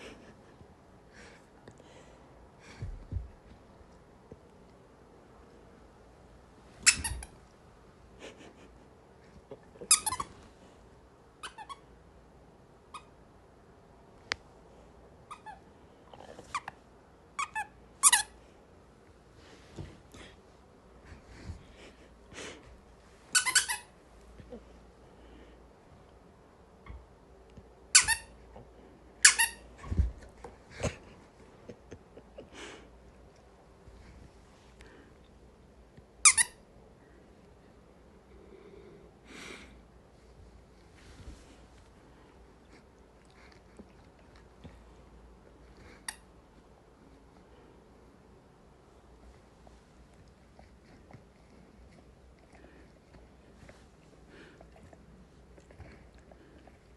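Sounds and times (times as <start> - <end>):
squeaky dog toy squeaking: 11.4 - 11.8, 23.3 - 23.9, 27.9 - 28.3, 29.2 - 29.6, 36.2 - 36.6.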